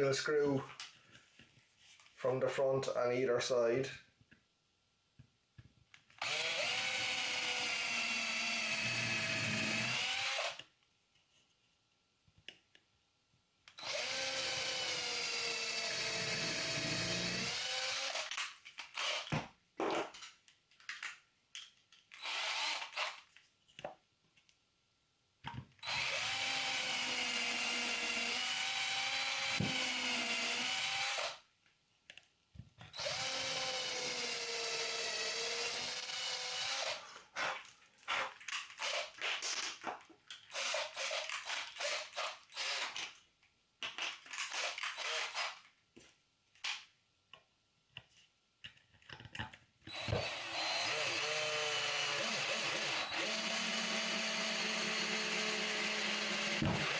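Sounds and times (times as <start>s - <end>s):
power drill driving screws into wood: 6.2s - 10.7s, 13.8s - 20.2s, 22.1s - 23.2s, 25.8s - 31.4s, 32.9s - 37.0s, 38.6s - 39.7s, 40.5s - 43.2s, 43.9s - 45.7s, 49.9s - 56.9s.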